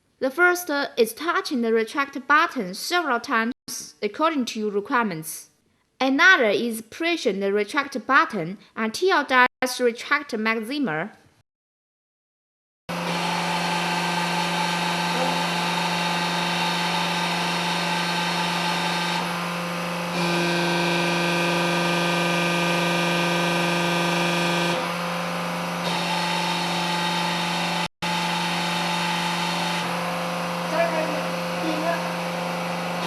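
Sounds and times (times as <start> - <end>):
electric motor and pump humming: 12.9 - 33.0.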